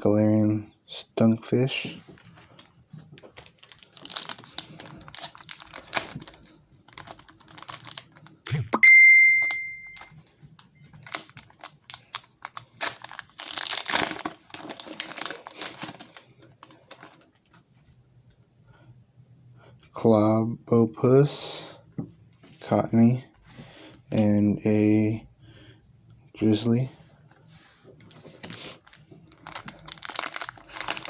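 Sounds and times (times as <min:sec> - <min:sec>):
foil wrappers crinkling and tearing: 0:02.5 - 0:08.6, 0:10.0 - 0:17.4, 0:28.3 - 0:31.0
loud ding: 0:08.8 - 0:09.9.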